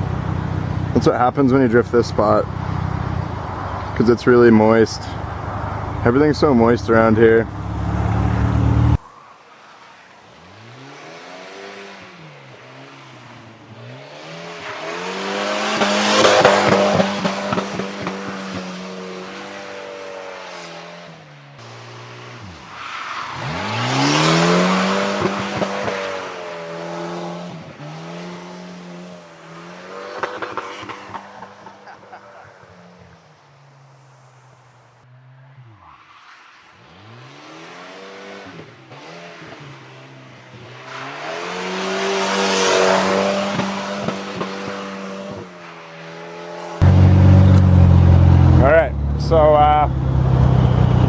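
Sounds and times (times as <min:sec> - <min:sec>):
car engine revving hard: 0:00.0 - 0:09.1, 0:10.3 - 0:33.2, 0:36.8 - 0:51.0
tyre squeal: 0:21.6 - 0:26.1.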